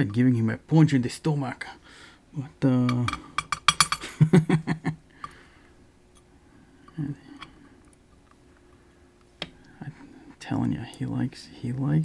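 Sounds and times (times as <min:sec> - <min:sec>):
voice: 0:00.0 - 0:01.8, 0:02.4 - 0:03.2, 0:09.8 - 0:12.0.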